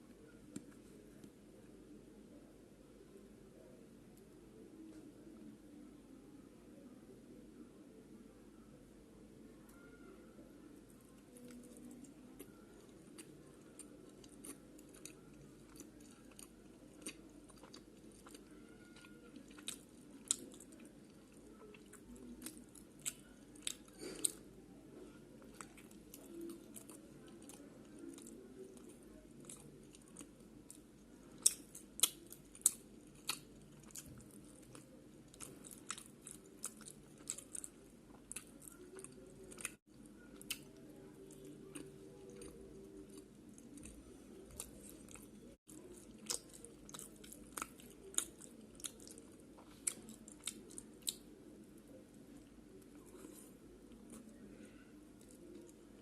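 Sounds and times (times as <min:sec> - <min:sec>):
chewing and biting food: 0:11.3 - 0:24.4, 0:25.4 - 0:39.8, 0:40.4 - 0:51.3.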